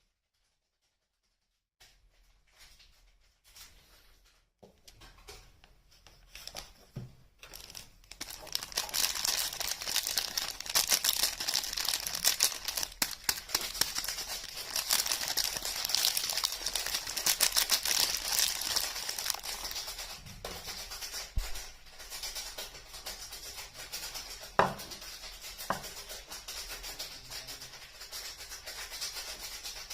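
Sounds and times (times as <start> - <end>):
packaging crinkling and tearing: 6.3 - 6.8, 7.4 - 20.0.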